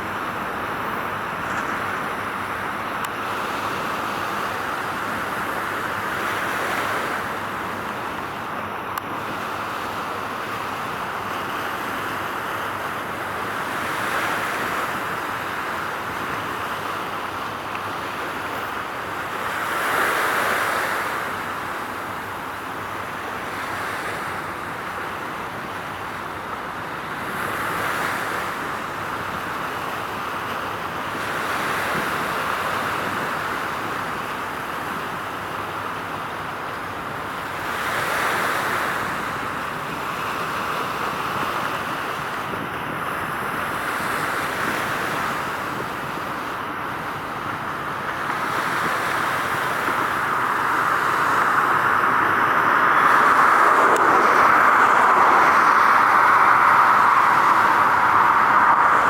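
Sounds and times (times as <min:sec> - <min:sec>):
outdoor rushing noise: 0:47.0 - 0:59.0.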